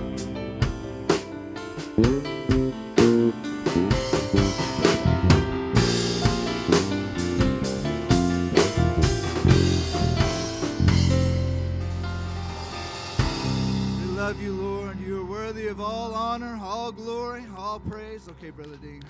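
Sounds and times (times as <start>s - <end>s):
drum hits: 0.0s - 15.0s
band playing instrumental: 0.0s - 16.1s.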